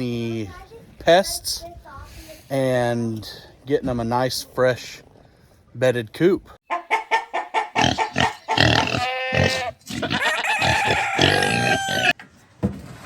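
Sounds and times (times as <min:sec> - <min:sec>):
goats bleating: 0:07.8 - 0:12.2.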